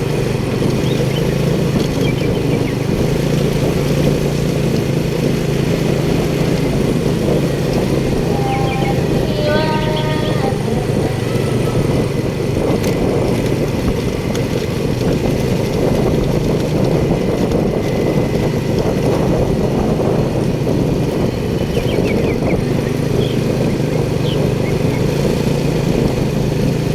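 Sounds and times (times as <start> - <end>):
motor rumbling: 0.0 - 24.8
faint high chirps: 7.9 - 12.1.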